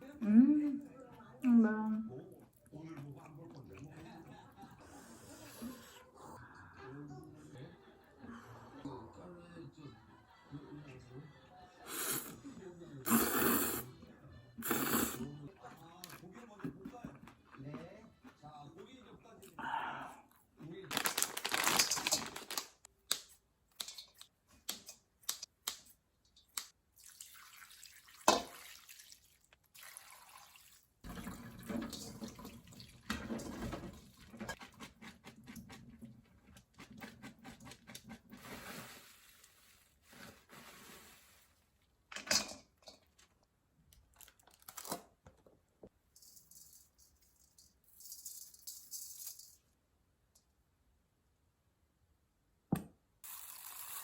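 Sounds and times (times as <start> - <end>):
tap water running into sink: 27.0 - 34.5
dishes and utensils clinking: 31.1 - 34.8, 42.1 - 43.2.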